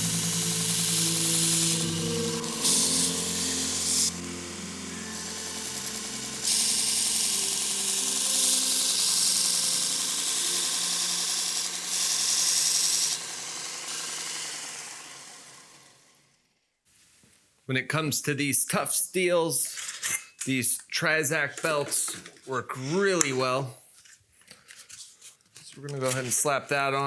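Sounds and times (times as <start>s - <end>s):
blade grinding on belt hiss: 0.0s - 16.0s
belt grinder motor humming: 0.0s - 16.4s.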